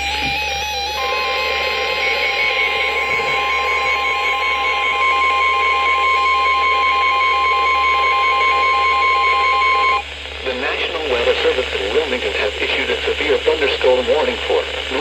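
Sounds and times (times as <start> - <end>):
steady alarm beep: 0.0 - 10.0
radio hiss: 0.1 - 15.0.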